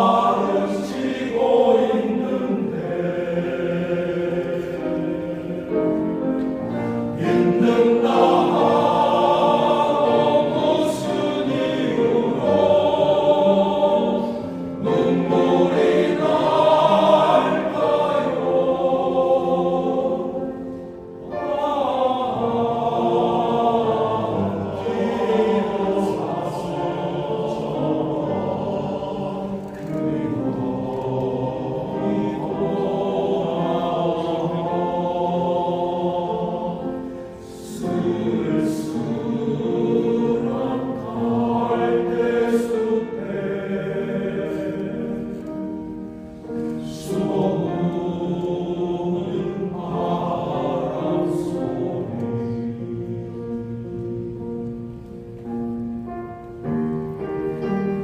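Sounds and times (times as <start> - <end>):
men's choir singing: 0.0 - 54.6.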